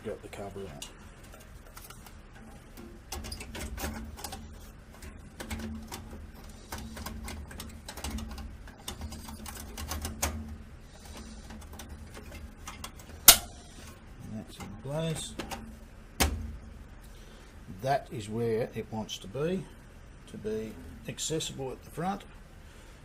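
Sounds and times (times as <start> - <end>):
computer case being handled: 1.2 - 16.7.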